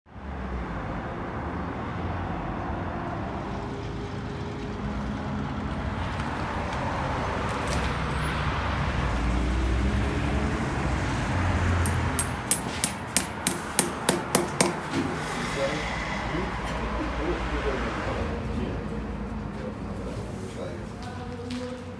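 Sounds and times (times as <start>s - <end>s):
road traffic passing: 0.1s - 21.5s
sharp knocks: 11.8s - 15.2s.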